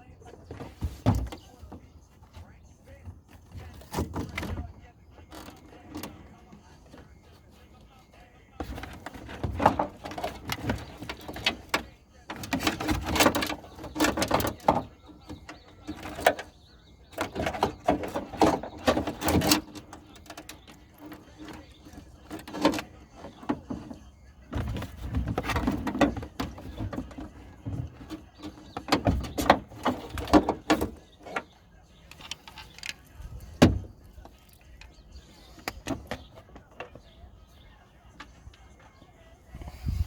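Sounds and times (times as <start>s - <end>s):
tools clicking and rattling: 8.6s - 37.2s.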